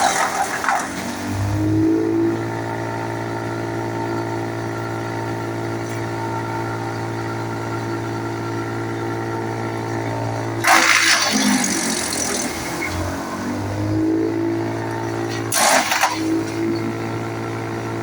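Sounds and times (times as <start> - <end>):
wood chipper humming: 0.0 - 18.0
wood being chipped: 10.6 - 13.1, 14.8 - 17.1.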